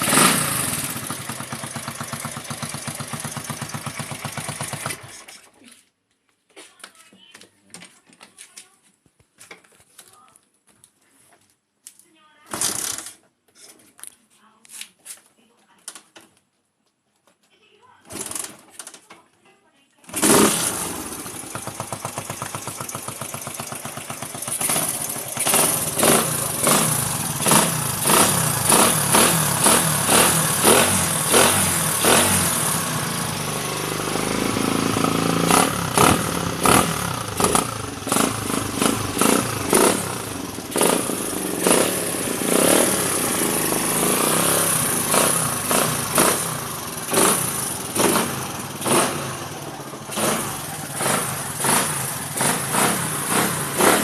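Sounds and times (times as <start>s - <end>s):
motorcycle engine revving: 0.0s - 5.5s, 20.1s - 54.0s.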